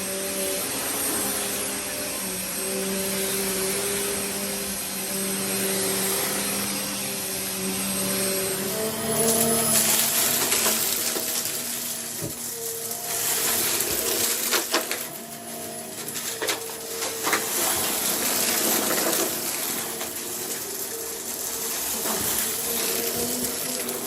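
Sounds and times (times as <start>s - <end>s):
vacuum cleaner running: 0.0s - 24.0s
crackle of clicks and rattles: 9.2s - 24.0s.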